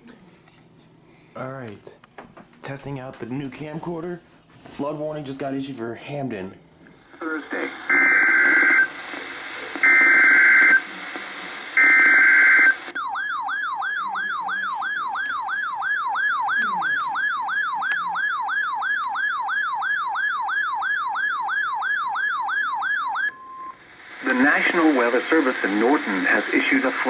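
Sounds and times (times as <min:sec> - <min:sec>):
siren-like attention tone: 0:11.8 - 0:23.8.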